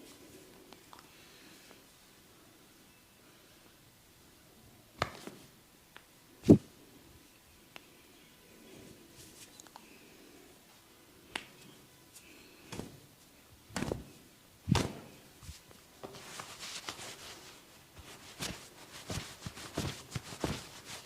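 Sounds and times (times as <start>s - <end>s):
sharp hand slaps: 11.3s - 11.6s.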